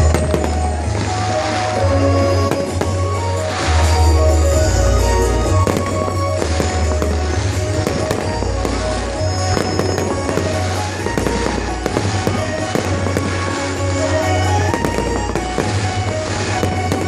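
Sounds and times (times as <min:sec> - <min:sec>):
fireworks bursting and crackling: 0:00.0 - 0:17.0.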